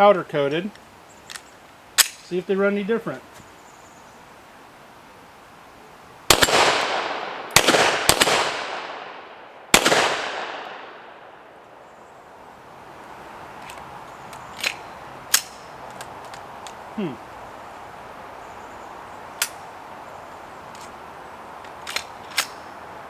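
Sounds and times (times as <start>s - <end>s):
pistol shots echoing: 6.3s - 11.5s.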